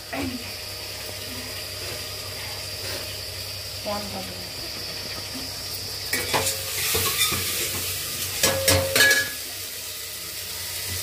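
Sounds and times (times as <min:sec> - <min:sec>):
food sizzling: 0:00.0 - 0:11.0
metal spoon scraping pan: 0:06.1 - 0:07.8
pan clanking and ringing: 0:08.4 - 0:09.4.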